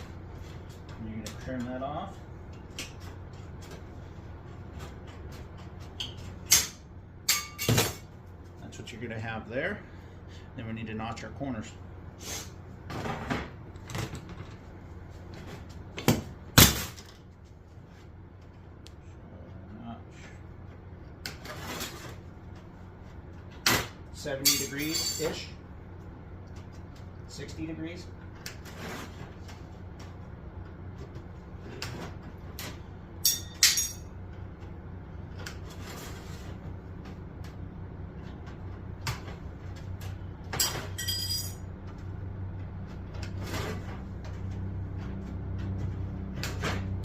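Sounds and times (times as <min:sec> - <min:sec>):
steady low hum: 0:00.0 - 0:47.0
sharp metallic clanks: 0:33.2 - 0:34.1.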